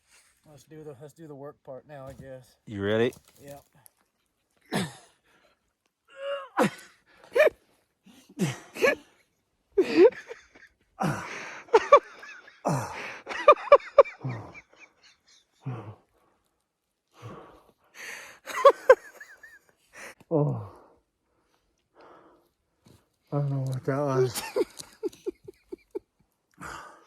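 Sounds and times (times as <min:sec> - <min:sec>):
person gasping and grunting: 0:06.1 - 0:07.6, 0:11.0 - 0:11.7, 0:12.7 - 0:13.3, 0:14.2 - 0:14.6, 0:15.6 - 0:16.1, 0:17.2 - 0:18.2, 0:20.2 - 0:21.0.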